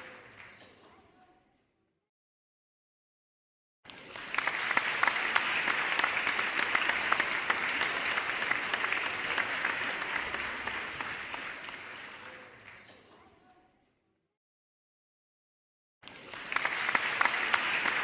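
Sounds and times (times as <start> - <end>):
audience applauding: 3.9 - 12.9, 16.0 - 18.0.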